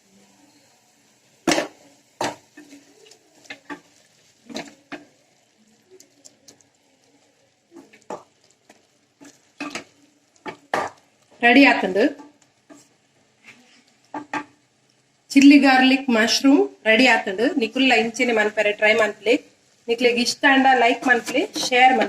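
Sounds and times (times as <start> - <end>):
spoon knocking and scraping pan: 1.4 - 5.2, 7.7 - 11.4, 12.1 - 14.6, 20.7 - 22.0.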